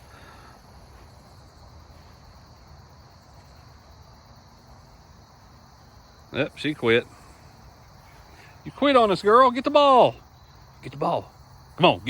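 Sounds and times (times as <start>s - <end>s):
insects chirring: 0.0s - 12.0s.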